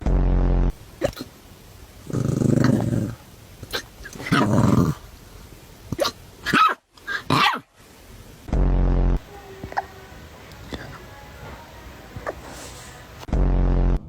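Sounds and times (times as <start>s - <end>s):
puppy hiccups: 1.0s - 1.3s, 5.9s - 7.7s, 12.2s - 12.5s
puppy growly barks and grunts: 2.0s - 5.1s, 5.9s - 7.7s.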